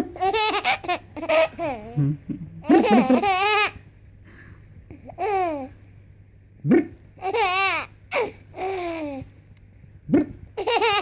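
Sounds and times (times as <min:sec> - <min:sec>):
baby laughing: 0:00.0 - 0:03.8, 0:07.2 - 0:09.2, 0:10.6 - 0:11.0.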